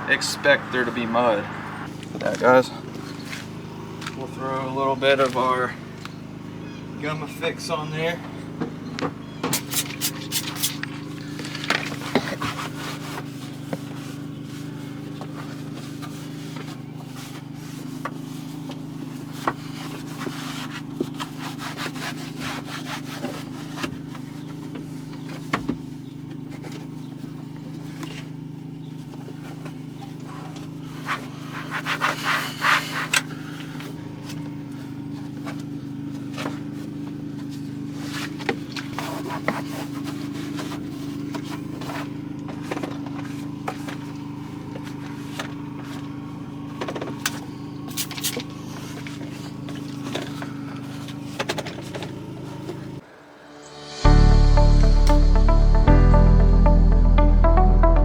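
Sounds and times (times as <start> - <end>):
applicator scraping strokes: 9.5 - 10.8.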